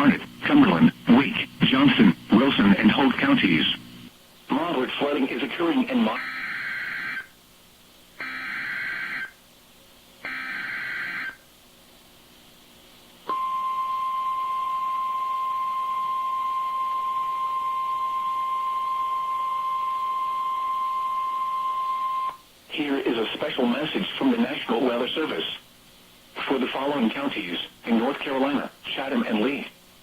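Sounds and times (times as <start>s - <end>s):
steady alarm tone: 6.2s - 7.3s, 8.2s - 9.4s, 10.2s - 11.4s, 13.3s - 22.4s.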